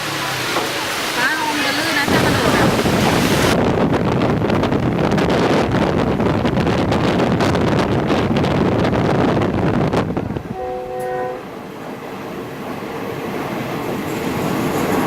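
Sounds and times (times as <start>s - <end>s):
waterfall rushing: 0.0s - 3.6s
wind buffeting microphone: 1.8s - 15.0s.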